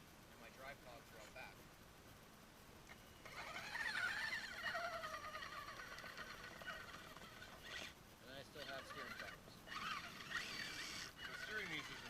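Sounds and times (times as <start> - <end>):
electric motor whining: 3.2 - 12.0.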